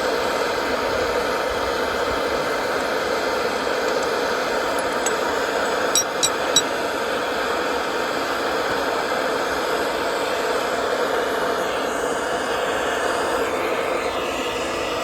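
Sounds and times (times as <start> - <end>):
light metallic clinks: 3.9 - 6.8.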